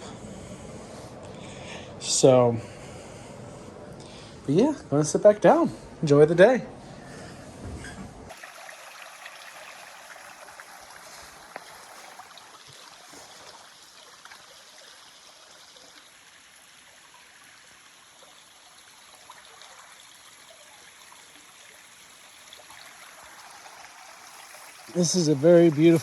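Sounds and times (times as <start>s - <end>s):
creek water running: 8.3s - 26.0s.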